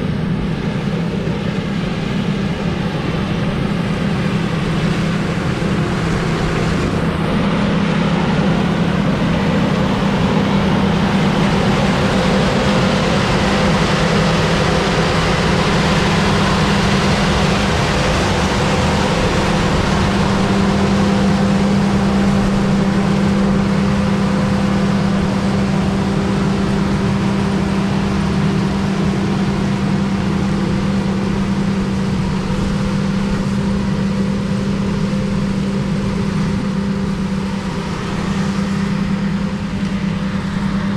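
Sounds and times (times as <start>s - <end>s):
harvesting machine engine drone: 0.0s - 40.9s.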